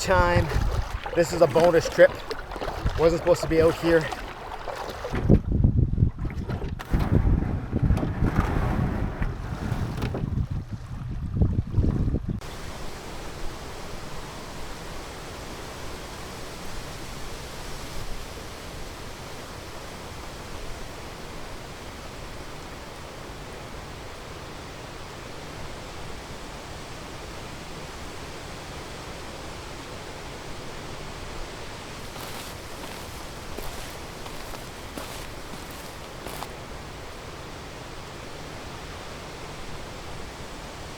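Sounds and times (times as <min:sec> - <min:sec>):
strong wind rushing: 0:05.2 - 0:12.4.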